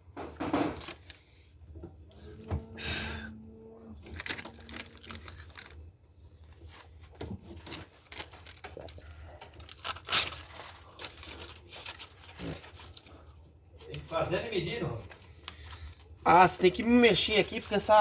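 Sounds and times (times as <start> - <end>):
low steady hum: 1.1 - 17.5
metal tools clinking: 7.6 - 12.1.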